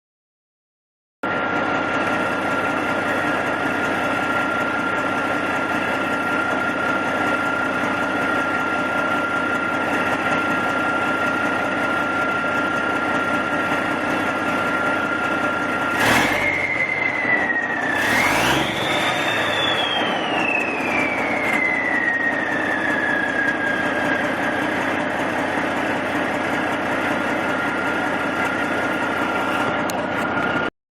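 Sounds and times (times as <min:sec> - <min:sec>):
diesel engine idling and revving: 0:01.2 - 0:30.7
turbocharger whistle: 0:15.8 - 0:25.3.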